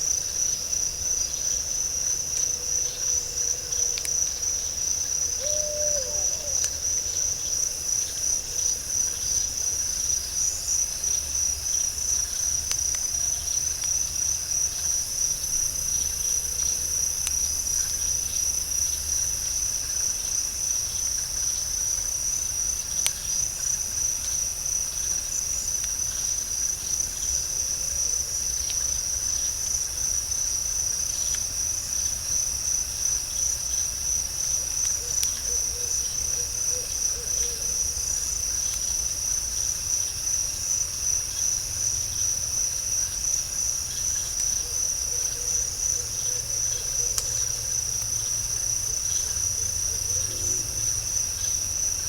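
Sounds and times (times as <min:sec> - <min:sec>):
crickets trilling: 0:00.0 - 0:52.0
faint ticks: 0:02.3 - 0:04.3, 0:06.5 - 0:06.8, 0:16.0 - 0:18.1, 0:46.6 - 0:48.2.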